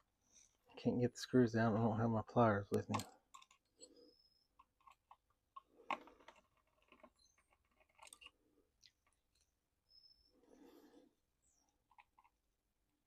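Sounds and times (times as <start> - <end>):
small clicks and scrapes of plastic parts: 2.7 - 9.6, 11.8 - 12.4.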